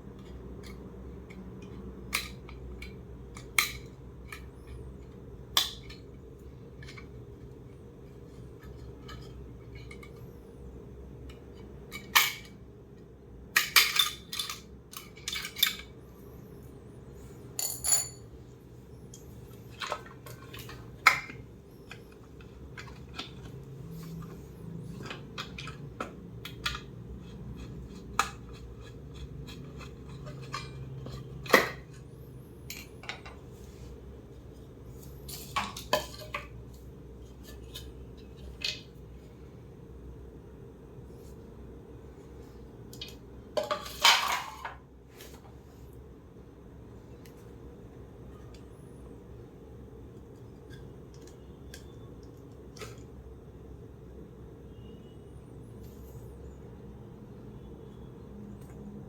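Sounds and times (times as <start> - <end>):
tools and small parts clinking: 13.5 - 16.0, 17.5 - 18.4, 19.1 - 33.4, 42.9 - 44.8.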